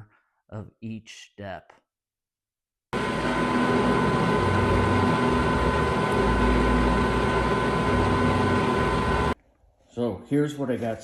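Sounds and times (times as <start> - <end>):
metal lathe running: 3.0 - 9.4.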